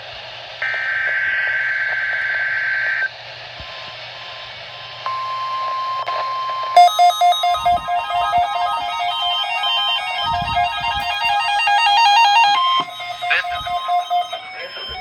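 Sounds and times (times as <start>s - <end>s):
plucked string music: 6.8s - 14.4s
buzzing data burst: 6.8s - 15.0s
steady warning alarm tone: 6.8s - 15.0s.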